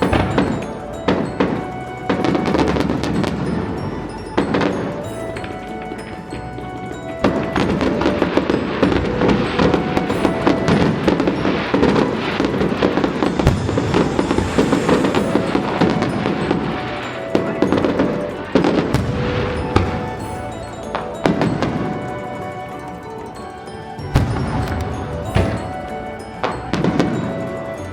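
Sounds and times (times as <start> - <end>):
music: 0.0 - 27.9
fireworks crackling and popping: 7.0 - 23.4, 24.0 - 27.8.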